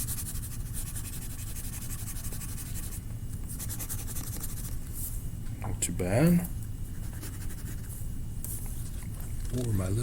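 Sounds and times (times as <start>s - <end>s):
drawing tool colouring on paper: 0.0s - 3.0s.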